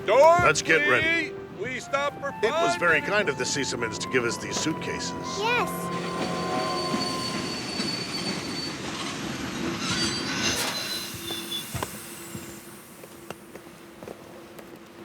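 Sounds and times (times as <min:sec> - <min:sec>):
train running on rails: 0:00.0 - 0:15.0
train wheels squealing: 0:04.6 - 0:13.4.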